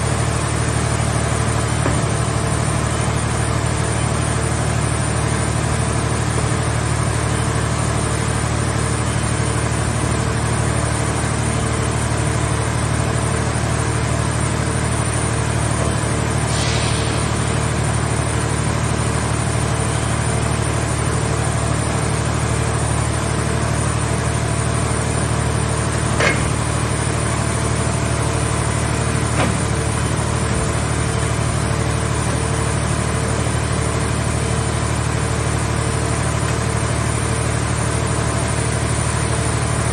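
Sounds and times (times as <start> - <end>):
hydraulic power unit running: 0.0 - 39.9
brief hiss: 16.4 - 18.0.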